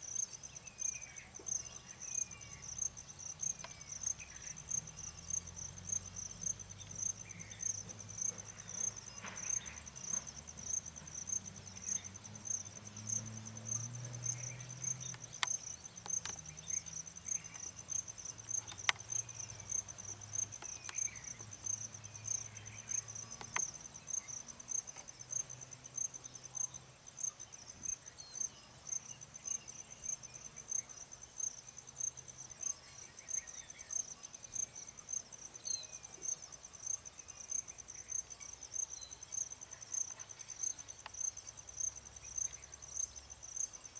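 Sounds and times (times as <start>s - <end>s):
faint bird chirps: 0.0s - 43.9s
insect chirping: 0.0s - 43.9s
sharp clicks: 18.6s - 19.1s.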